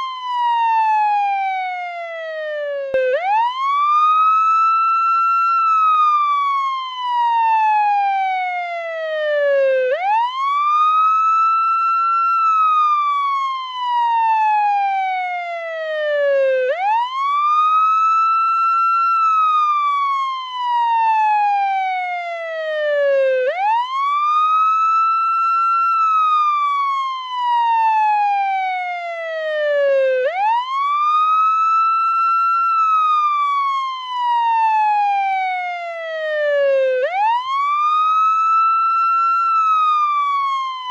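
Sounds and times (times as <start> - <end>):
ambulance siren wailing: 0.0 - 40.9.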